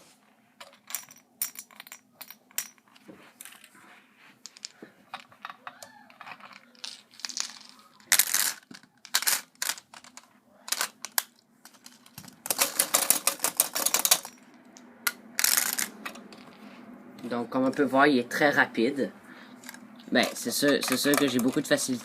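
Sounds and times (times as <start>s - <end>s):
marbles clattering: 4.4s - 16.6s, 19.6s - 22.0s.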